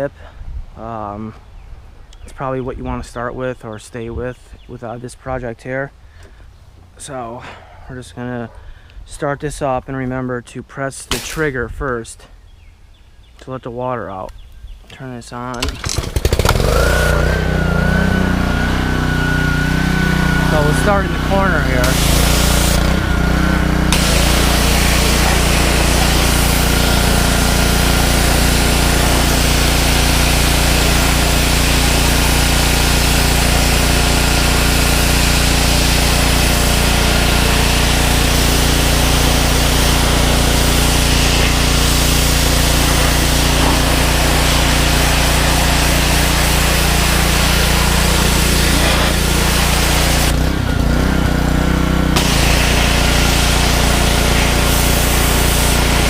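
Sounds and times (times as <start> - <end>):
pressure washer engine running: 11.1 - 11.4, 15.6 - 56.0
hissing water jet: 11.1 - 11.5, 15.6 - 51.0, 52.1 - 56.0.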